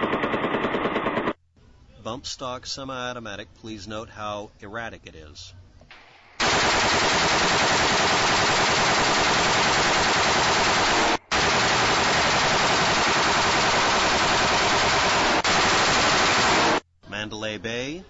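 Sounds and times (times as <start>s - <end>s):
rifle rapid fire: 0.0s - 1.4s, 6.4s - 16.8s.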